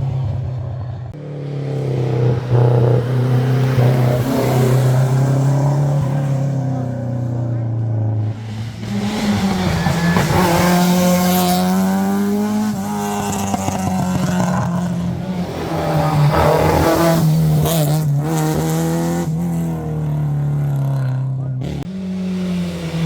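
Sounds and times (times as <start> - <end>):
rally car engine revving: 0.0 - 23.0
tyre squeal: 8.4 - 12.0.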